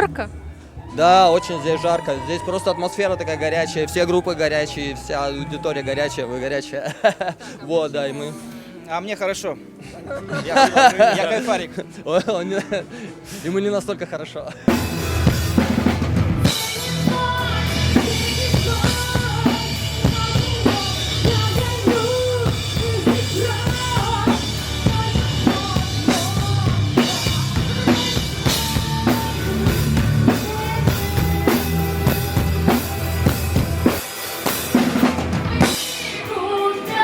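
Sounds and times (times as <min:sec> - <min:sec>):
rock music with drum kit: 0:14.7 - 0:37.0.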